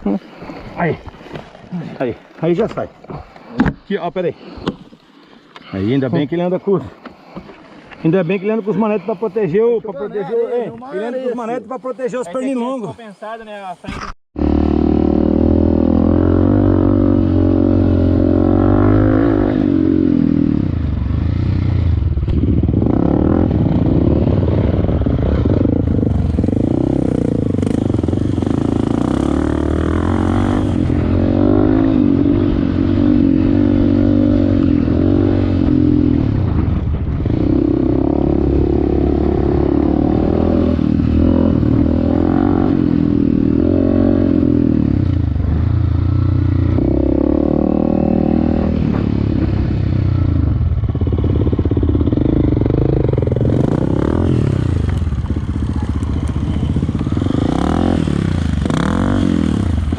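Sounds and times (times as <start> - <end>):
motorcycle engine revving: 14.4 - 59.9.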